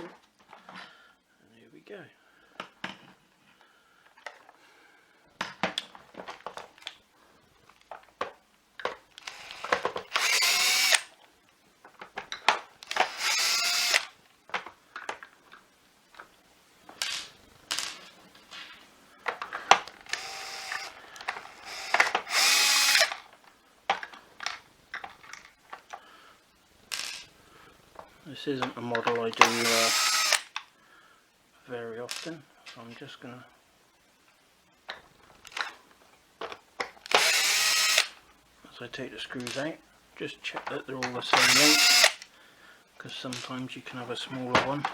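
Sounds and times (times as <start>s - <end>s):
screws and plastic housing clicking: 8.2s - 11.2s, 12.0s - 14.2s, 19.3s - 26.0s, 29.0s - 30.6s, 36.4s - 38.2s, 40.6s - 42.3s
power screwdriver whining: 9.2s - 11.2s, 12.8s - 14.2s, 19.7s - 23.3s, 29.4s - 30.6s, 37.0s - 38.2s, 41.3s - 42.3s.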